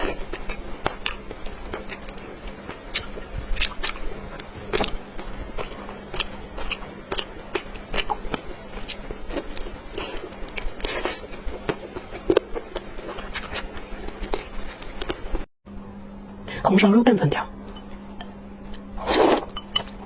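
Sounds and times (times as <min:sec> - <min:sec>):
chewing and biting food: 0:00.0 - 0:15.4.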